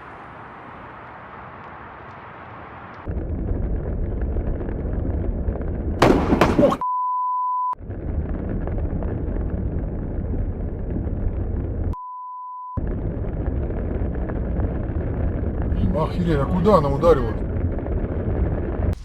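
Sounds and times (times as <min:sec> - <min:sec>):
lightning strike crack: 0:03.0 - 0:06.8, 0:12.8 - 0:19.0
high censor bleep: 0:06.8 - 0:07.8, 0:12.0 - 0:12.8
steady rushing noise: 0:12.8 - 0:19.0.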